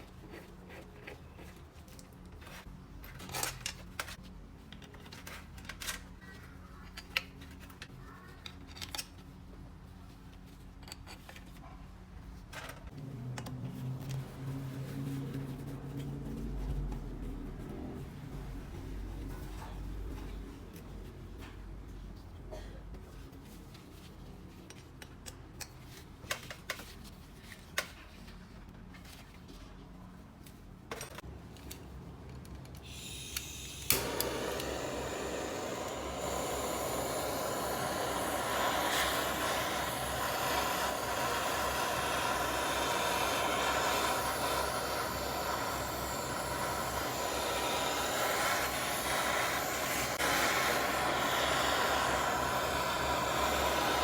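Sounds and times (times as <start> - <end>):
loud hissing machine: 32.8 - 54.0.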